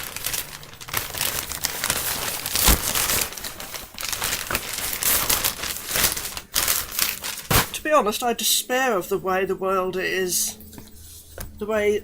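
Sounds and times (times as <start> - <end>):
crinkly packaging rustling: 0.0 - 8.0.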